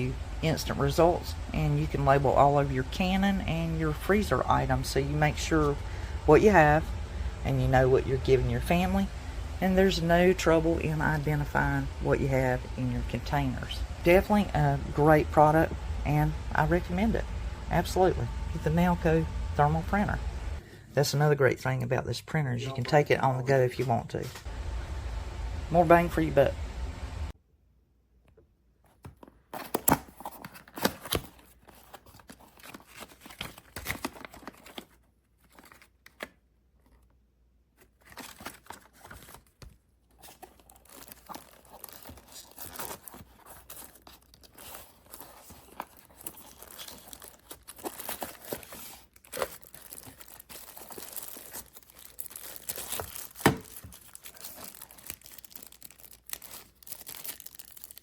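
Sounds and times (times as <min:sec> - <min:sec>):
paper crinkling and tearing: 0:29.0 - 0:37.1, 0:37.8 - 0:58.0.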